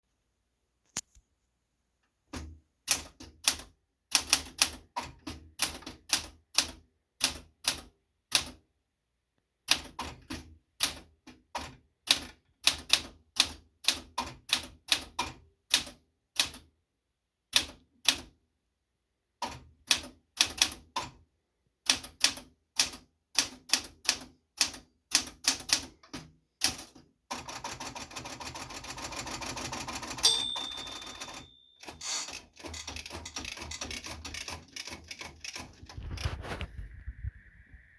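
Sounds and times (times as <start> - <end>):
typewriter rasping: 27.5 - 36.0
typewriter clack: 29.2 - 35.9
manual typewriter key strikes: 30.1 - 35.8.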